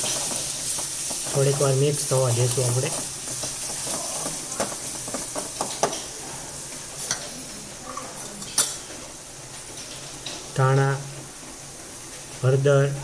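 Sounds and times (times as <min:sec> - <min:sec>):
utensil clicking against pan: 0:00.0 - 0:06.1
paste sizzling in hot oil: 0:00.0 - 0:13.0.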